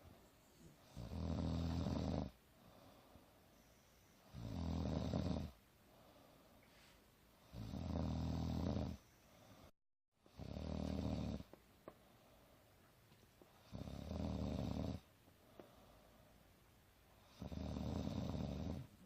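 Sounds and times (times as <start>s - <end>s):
low snoring: 0.6s - 2.4s, 4.2s - 5.6s, 7.5s - 9.1s, 10.3s - 11.5s, 13.6s - 15.1s, 17.2s - 19.0s.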